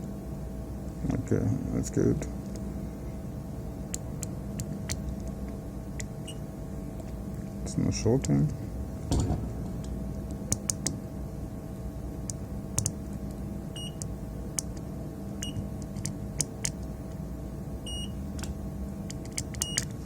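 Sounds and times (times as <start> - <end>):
multimeter high beeps: 13.8 - 14.0, 17.8 - 18.2.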